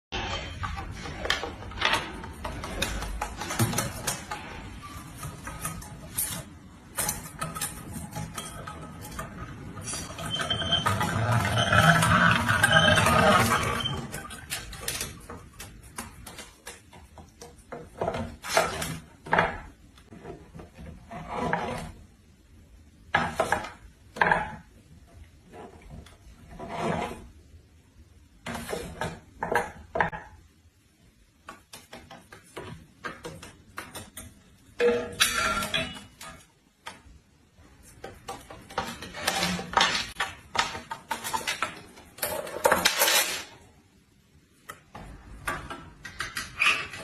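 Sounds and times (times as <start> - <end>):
hard objects scraping on wood: 0.2 - 15.2, 17.8 - 22.0, 25.5 - 27.4.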